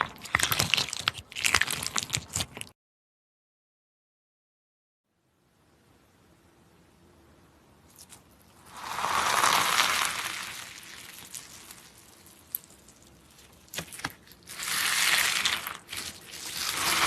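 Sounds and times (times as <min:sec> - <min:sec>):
slime crackling and crunching: 0:00.0 - 0:02.8, 0:07.9 - 0:17.0.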